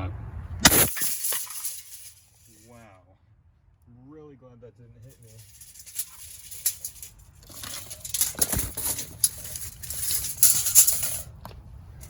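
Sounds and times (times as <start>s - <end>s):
plastic tape measure rattling: 0.6s - 2.7s, 5.1s - 11.3s.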